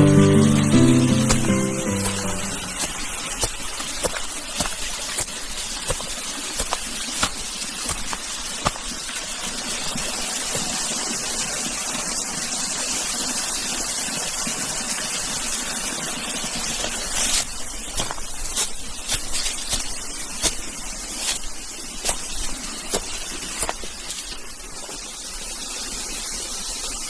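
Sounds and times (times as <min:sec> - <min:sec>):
steady rushing hiss: 0:00.0 - 0:27.0
footsteps in chain spikes: 0:02.0 - 0:09.0, 0:16.7 - 0:25.0.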